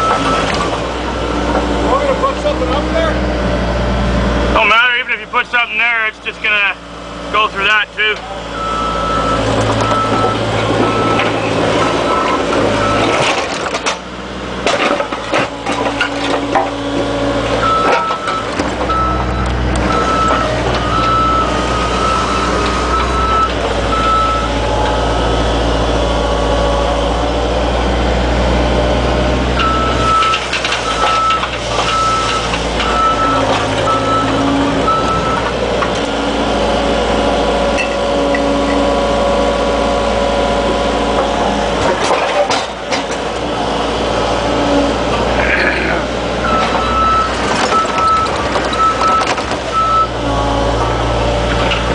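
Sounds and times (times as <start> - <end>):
clanks of tracks and bucket: 0.0 - 3.1, 7.4 - 25.4, 29.4 - 36.4, 37.6 - 51.9
excavator diesel engine: 0.0 - 51.9
travel alarm beeping: 8.6 - 11.2, 17.6 - 24.5, 29.6 - 35.5, 46.4 - 50.1.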